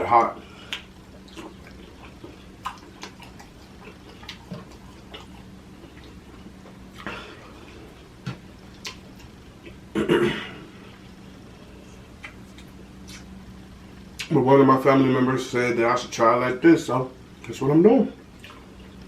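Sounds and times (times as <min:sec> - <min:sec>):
faint steady hum: 0:00.0 - 0:19.0
lip smacks: 0:00.6 - 0:07.5, 0:08.2 - 0:09.8, 0:12.2 - 0:13.3, 0:14.2 - 0:14.4, 0:18.4 - 0:19.0
chewing with mouth clicks: 0:00.6 - 0:09.8, 0:11.9 - 0:13.3, 0:18.3 - 0:19.0.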